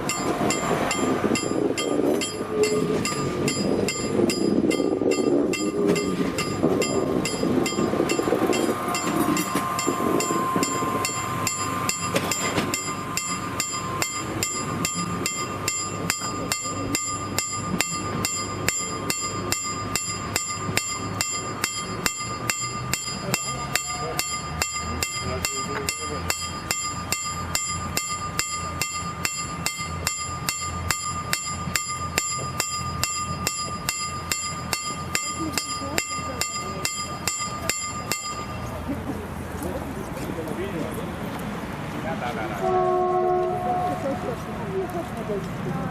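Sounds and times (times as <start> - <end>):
level-crossing bell ringing: 0.0 - 38.8
railbus rumbling past: 0.0 - 45.9.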